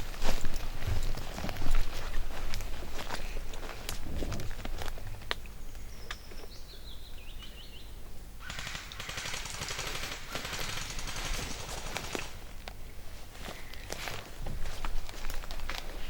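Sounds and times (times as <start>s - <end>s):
bird chirping: 5.6s - 8.0s
airsoft gun full-auto burst: 8.4s - 12.5s.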